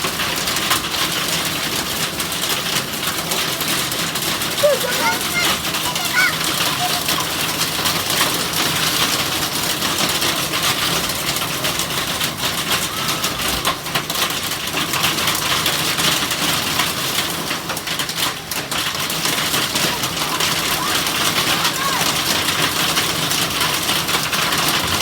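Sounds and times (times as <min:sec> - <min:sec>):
heavy rain pouring: 0:00.0 - 0:25.0.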